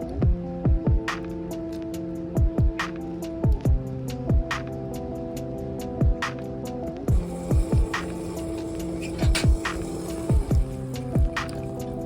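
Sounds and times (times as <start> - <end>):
deep kick drums: 0.2 - 1.1, 2.4 - 2.8, 3.4 - 4.5, 6.0 - 6.2
held chords: 6.9 - 12.0.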